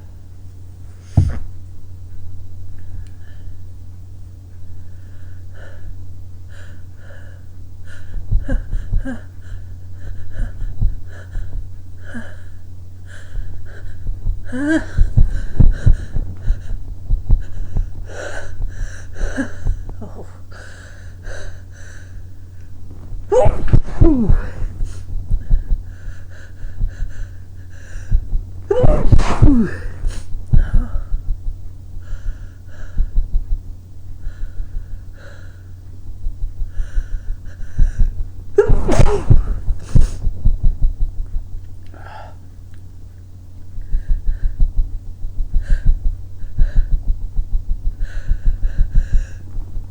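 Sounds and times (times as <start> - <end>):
person sneezing loudly: 23.3 - 24.7, 28.7 - 30.3, 38.6 - 40.2.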